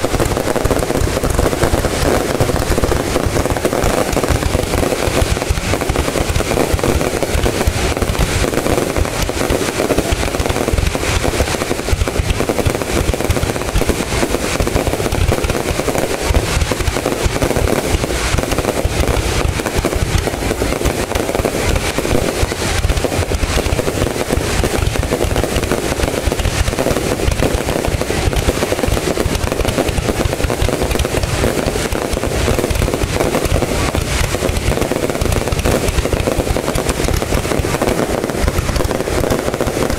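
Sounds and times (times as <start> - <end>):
fireworks bangs and crackling: 0.0 - 39.9.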